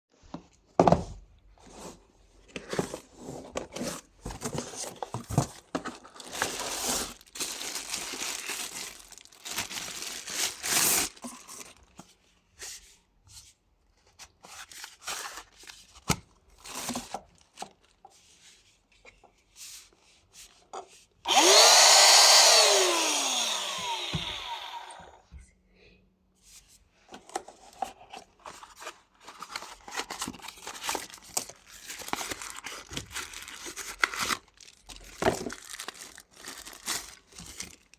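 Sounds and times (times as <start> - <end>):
packaging rustling and clicking: 2.5 - 12.1, 27.2 - 37.9
handheld vacuum motor whine: 21.3 - 25.3.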